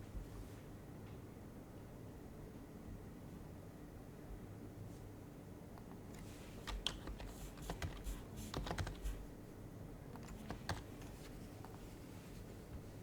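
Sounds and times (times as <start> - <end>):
keyboard typing: 5.8 - 9.3, 10.1 - 11.8.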